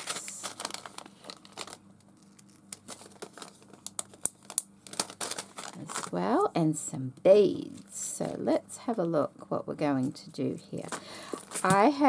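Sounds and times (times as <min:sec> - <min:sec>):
plastic packaging crinkling: 0:00.0 - 0:06.5.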